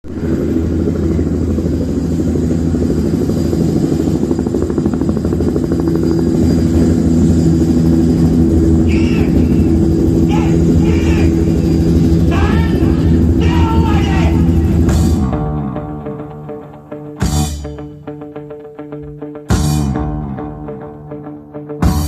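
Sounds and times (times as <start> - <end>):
helicopter rotor through speakers: 0.0 - 17.0.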